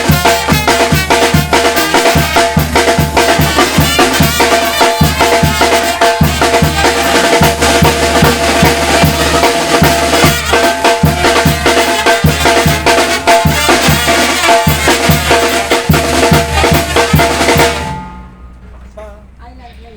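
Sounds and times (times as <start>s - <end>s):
bass drum and snare beat: 0.0s - 18.2s
band music: 0.0s - 19.4s.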